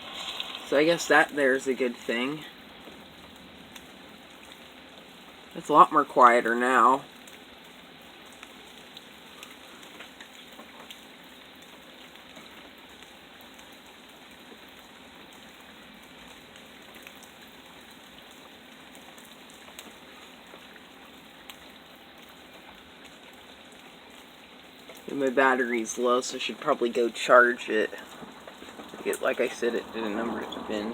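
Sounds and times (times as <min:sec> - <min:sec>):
steady rain falling: 0:00.0 - 0:30.9
faint drips and taps: 0:06.8 - 0:30.9.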